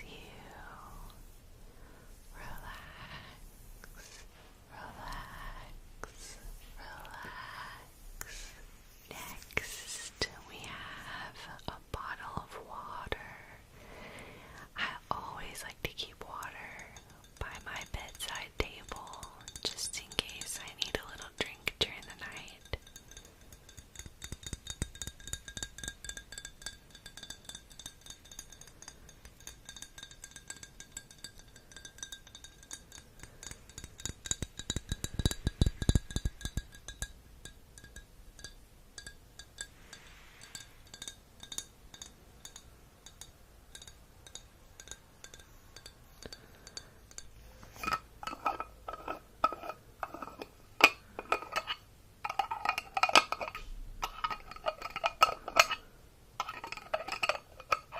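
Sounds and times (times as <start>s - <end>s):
light taps and clinks ringing: 21.9s - 57.9s.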